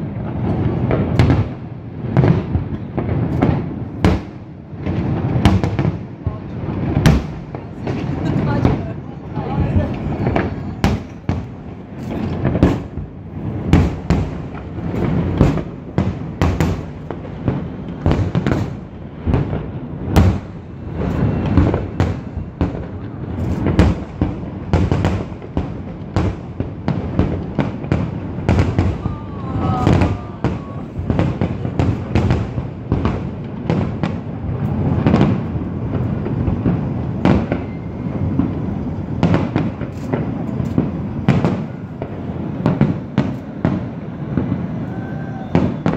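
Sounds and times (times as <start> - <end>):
deep firework booms: 0.0 - 45.9
firework bangs: 0.0 - 45.9
firework whistle: 20.2 - 24.0, 28.4 - 32.3, 37.2 - 40.2, 41.4 - 45.9.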